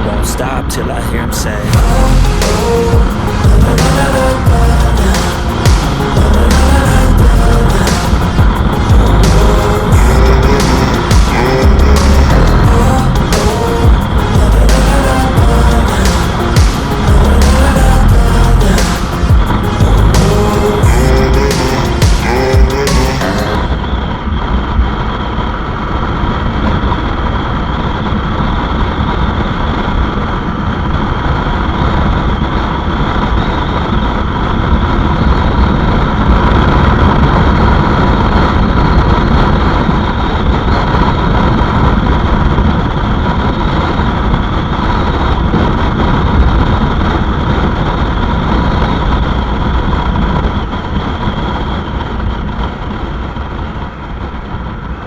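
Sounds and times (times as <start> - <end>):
wind rush on microphone: 23.5 - 55.0.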